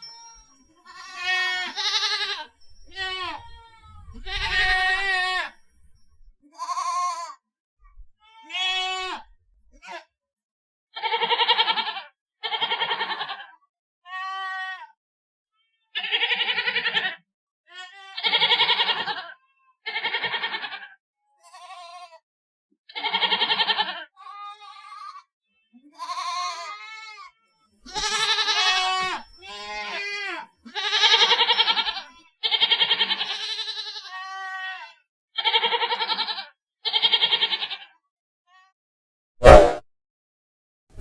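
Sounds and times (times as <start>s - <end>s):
goats bleating: 0.9s - 3.4s, 8.5s - 9.1s, 27.9s - 30.0s.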